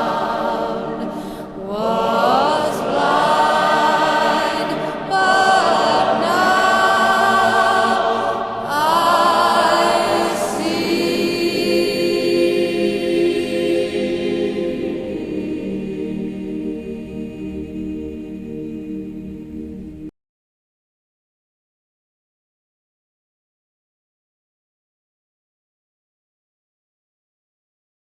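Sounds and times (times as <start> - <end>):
choir singing a cappella: 0.0 - 20.1.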